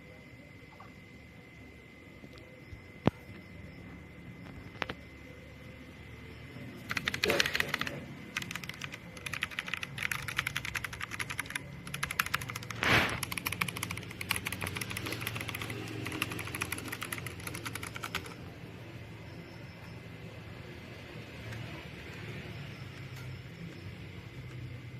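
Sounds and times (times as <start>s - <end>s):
mechanical keyboard typing: 6.8s - 18.5s.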